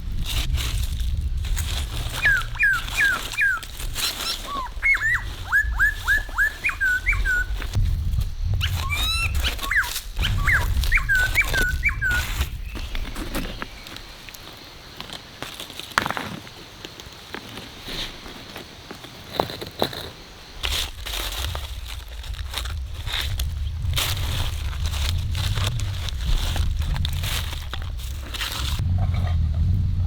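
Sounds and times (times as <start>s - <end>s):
low rumbling noise: 0.0s - 3.9s, 21.3s - 30.0s
dog whining: 2.2s - 7.5s, 8.6s - 12.4s.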